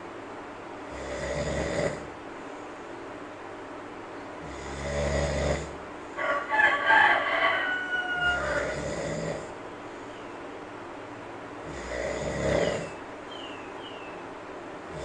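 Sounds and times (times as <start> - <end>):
person snoring: 0.9 - 2.1, 4.4 - 5.8, 8.3 - 9.6, 11.6 - 13.0
rooster-like crowing call: 6.2 - 9.2.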